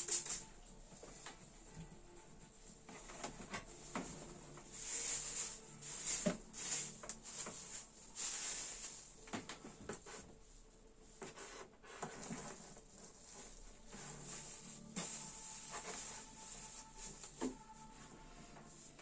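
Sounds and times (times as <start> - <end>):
plastic bags rustling: 2.8 - 11.2, 12.0 - 19.0.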